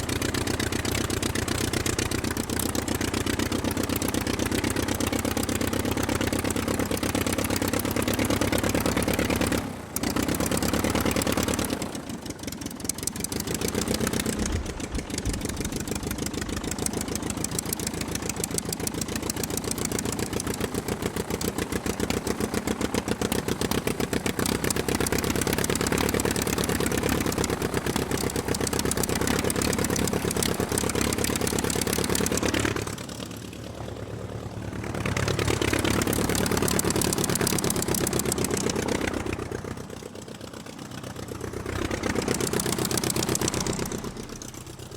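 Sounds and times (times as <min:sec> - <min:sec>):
piston aircraft engine running: 0:00.0 - 0:44.9.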